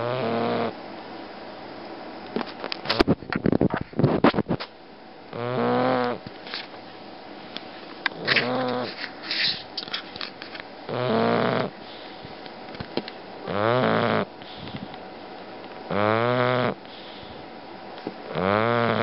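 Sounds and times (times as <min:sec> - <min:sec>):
dog snoring: 0:00.0 - 0:00.8, 0:05.3 - 0:06.2, 0:08.2 - 0:09.0, 0:10.9 - 0:12.1, 0:13.4 - 0:14.8, 0:15.9 - 0:17.2, 0:18.2 - 0:19.0.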